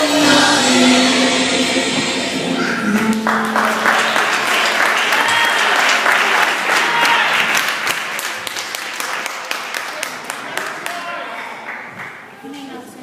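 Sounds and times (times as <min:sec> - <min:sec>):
band holding last note: 0:00.0 - 0:06.4
audience applauding: 0:03.0 - 0:12.3.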